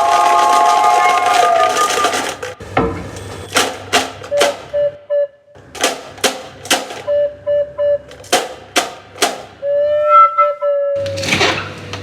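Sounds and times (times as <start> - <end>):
recorder playing: 4.2 - 5.6, 7.0 - 8.2, 9.6 - 11.1.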